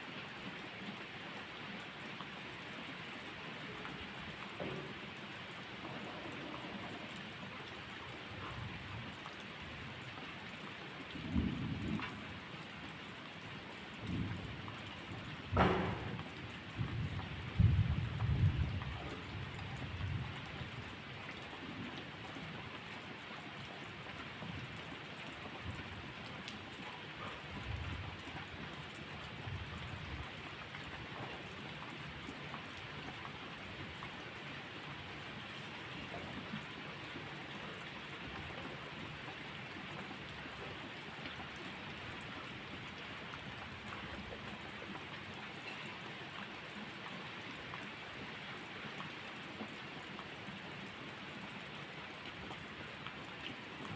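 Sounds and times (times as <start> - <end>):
steady rain hissing: 0.0 - 53.9
distant thunder rumbling: 14.1 - 19.0.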